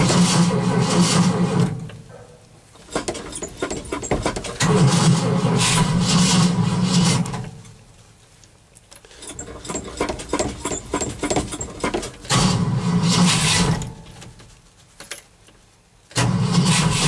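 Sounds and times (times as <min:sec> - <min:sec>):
engine cranking: 0:00.0 - 0:02.0, 0:02.8 - 0:07.6, 0:09.0 - 0:14.4, 0:16.1 - 0:17.0
rapid irregular clatter: 0:00.0 - 0:17.0.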